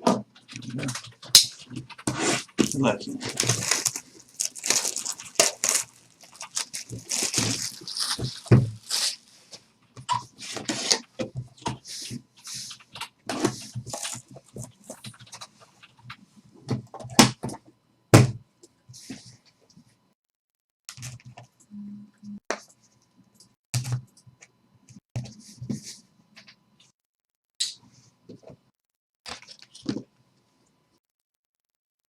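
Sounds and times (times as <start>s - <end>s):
wrapper and cardboard rustling and tearing: 2.1s - 9.6s, 13.9s - 15.2s.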